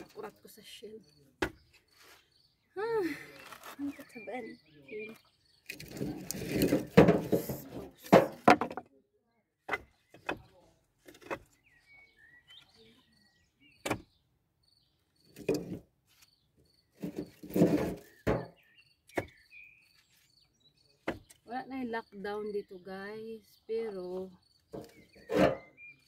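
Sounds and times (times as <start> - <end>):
birds chirping: 0.0 - 8.5, 9.3 - 26.0
firewood logs knocking on woodpile: 6.4 - 8.9, 9.6 - 10.5, 17.1 - 18.6, 21.0 - 21.4.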